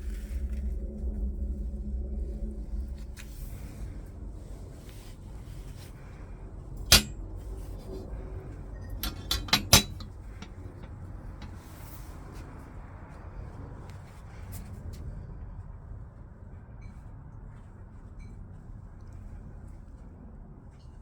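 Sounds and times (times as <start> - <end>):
low steady rumble: 0.0 - 16.8
hard objects knocking and clinking: 9.0 - 11.6.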